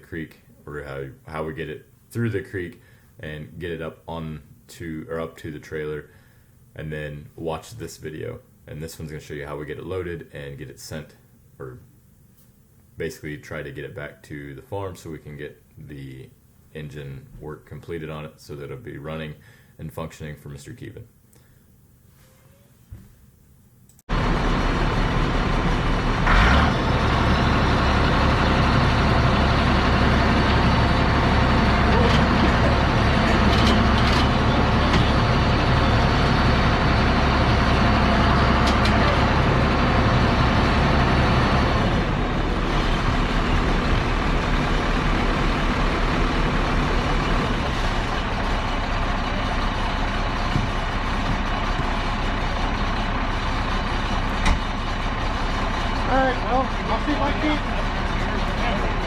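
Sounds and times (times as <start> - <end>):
heavy vehicle engine running: 24.1 - 59.0.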